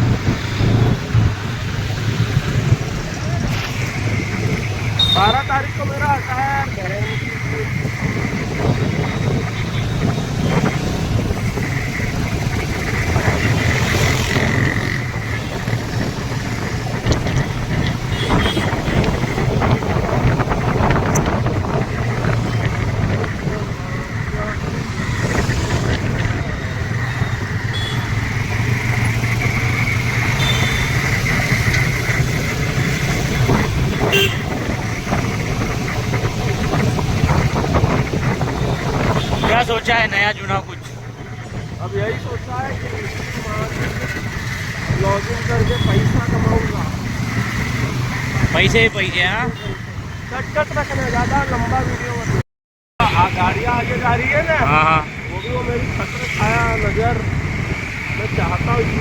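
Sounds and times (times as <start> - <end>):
road noise rushing: 0.0 - 52.4, 53.0 - 59.0
vehicle horn: 5.0 - 5.4, 18.1 - 19.0, 27.7 - 28.2, 30.3 - 31.0, 33.9 - 34.6, 39.1 - 39.5
motorbike engine running: 7.0 - 39.5.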